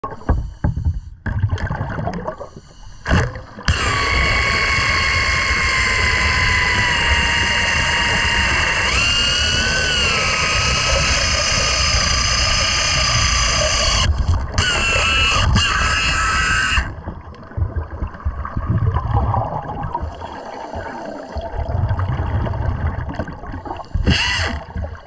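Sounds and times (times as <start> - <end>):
pneumatic air tool whining: 3.7 - 16.9, 24.0 - 24.7.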